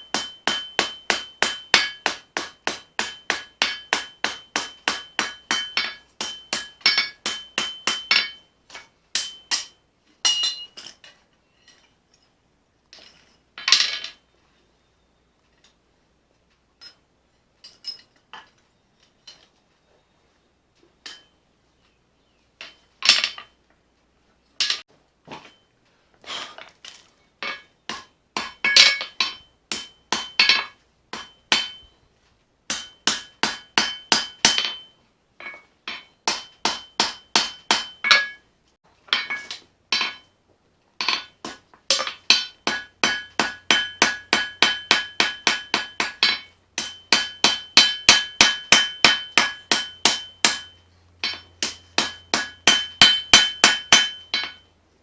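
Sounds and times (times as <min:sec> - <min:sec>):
anvil ringing: 0:00.0 - 0:10.9, 0:21.0 - 0:21.4, 0:27.4 - 0:32.0, 0:32.7 - 0:38.5, 0:41.0 - 0:54.7
hammer striking steel on anvil: 0:00.0 - 0:11.1, 0:16.8 - 0:17.0, 0:21.0 - 0:21.4, 0:27.4 - 0:32.0, 0:32.7 - 0:38.5, 0:39.1 - 0:40.3, 0:41.0 - 0:54.7.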